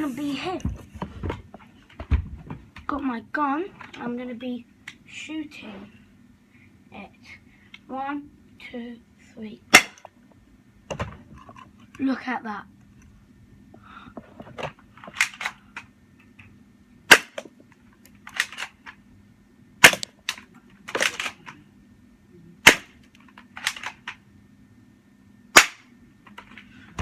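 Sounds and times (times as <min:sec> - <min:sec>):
soft noisy hiss: 0:00.0 - 0:27.0
bb gun shots: 0:09.7 - 0:10.0, 0:17.1 - 0:17.4, 0:19.8 - 0:20.1, 0:22.6 - 0:23.0, 0:25.5 - 0:25.9.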